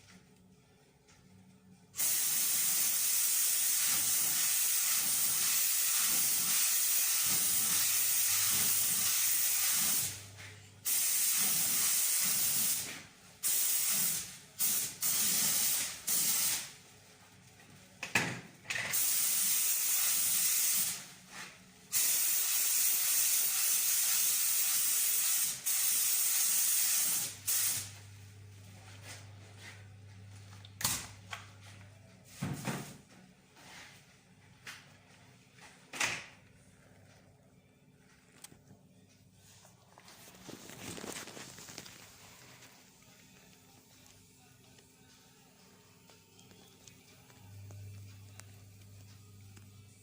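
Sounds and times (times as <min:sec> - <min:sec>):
spray gun hissing: 0:02.0 - 0:10.2, 0:10.8 - 0:16.6, 0:19.0 - 0:21.0, 0:21.9 - 0:27.9.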